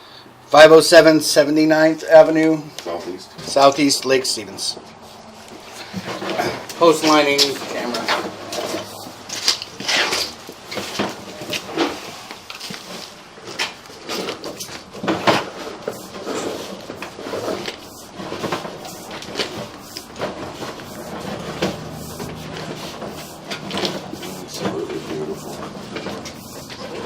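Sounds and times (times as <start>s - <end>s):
camera cable scraping inside pipe: 5.4s - 27.0s.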